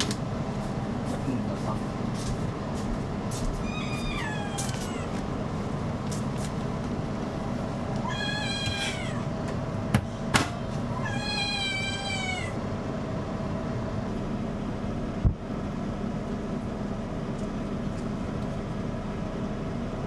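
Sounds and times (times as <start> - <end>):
cat meowing: 3.6 - 5.3, 8.0 - 9.3, 10.9 - 12.6.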